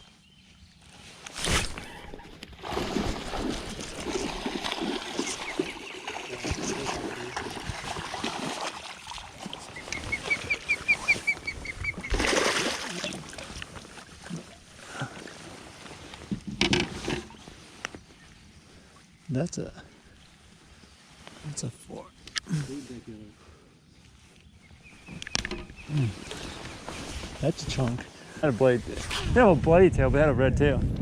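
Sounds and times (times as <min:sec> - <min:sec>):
water splashing and sloshing: 0:00.8 - 0:19.1, 0:25.0 - 0:28.0
fish thrashing at surface: 0:01.4 - 0:10.5, 0:12.0 - 0:14.5
bird chirping: 0:05.1 - 0:07.6, 0:09.6 - 0:12.3, 0:24.4 - 0:28.2.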